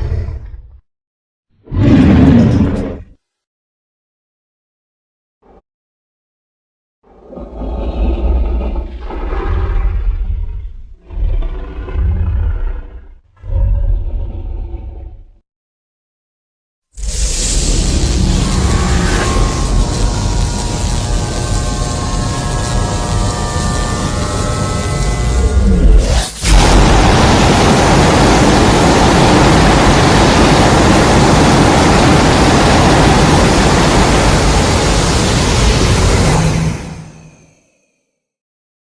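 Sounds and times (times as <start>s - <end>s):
deep rough monster roar: 7.1s - 15.4s
loud steady rushing noise: 17.7s - 37.3s.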